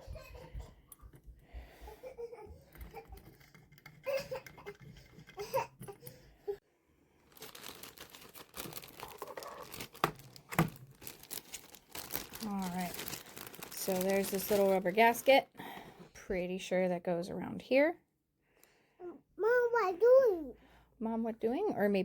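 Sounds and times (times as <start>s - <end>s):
packaging crinkling and rustling: 7.2s - 15.4s.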